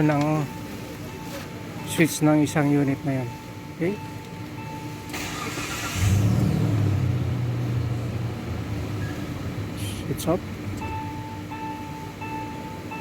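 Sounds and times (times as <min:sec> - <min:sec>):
car engine starting and idling: 0:05.1 - 0:11.2.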